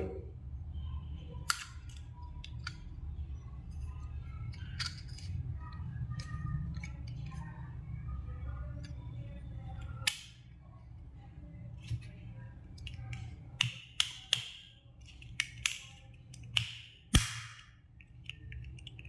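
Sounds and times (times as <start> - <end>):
faint low hum: 0.0 - 19.0
plastic clicks and snaps: 1.4 - 2.8, 9.8 - 10.4, 12.8 - 19.0.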